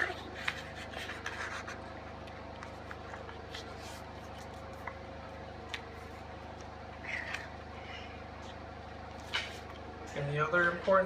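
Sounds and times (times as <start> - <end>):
paper crinkles: 0.0 - 1.9, 2.6 - 5.0
paper rubbing and rustling: 0.0 - 1.9, 2.6 - 5.0.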